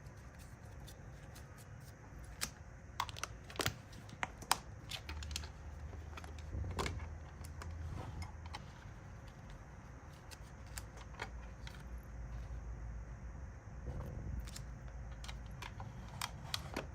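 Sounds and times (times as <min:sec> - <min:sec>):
faint low hum: 0:00.0 - 0:16.9.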